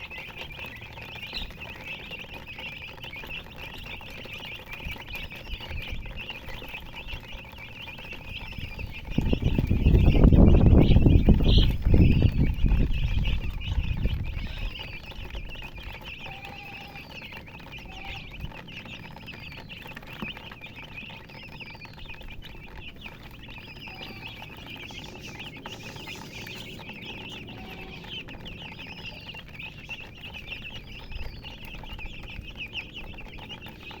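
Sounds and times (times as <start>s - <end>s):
hen clucking: 0.0s - 33.9s
chicks peeping: 0.0s - 34.0s
loud rising and falling peep: 23.6s - 29.0s.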